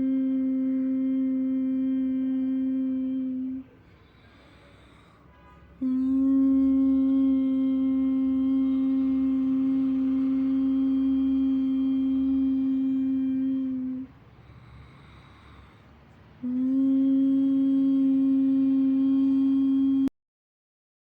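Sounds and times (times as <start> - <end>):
person humming: 0.0 - 3.8, 5.8 - 14.3, 16.4 - 20.1
quiet breath in: 2.4 - 20.1.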